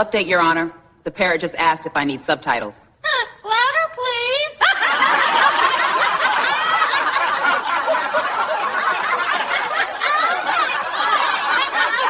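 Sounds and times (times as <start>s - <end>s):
crowd laughing: 4.6s - 12.0s.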